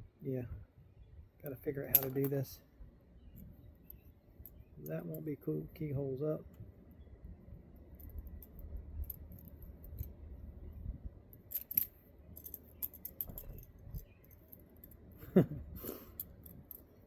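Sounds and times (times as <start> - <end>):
handcuffs clicking and clinking: 1.9 - 2.4, 11.4 - 15.2, 16.0 - 17.0.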